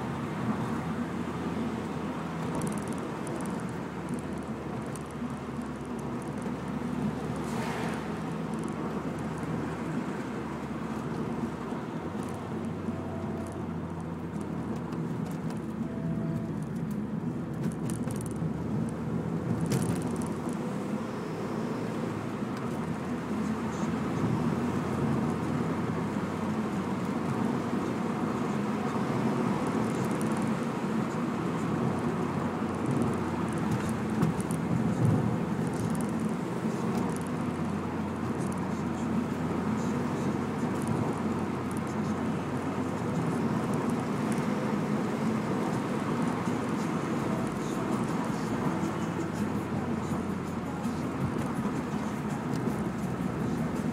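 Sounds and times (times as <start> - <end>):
car engine running: 0.0 - 53.9
road noise: 0.0 - 53.9.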